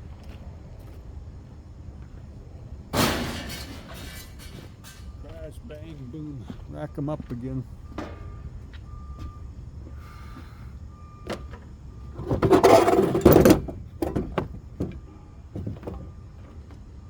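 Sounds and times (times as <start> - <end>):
scrap metal knocks and clinks: 3.0 - 5.2, 12.2 - 15.0.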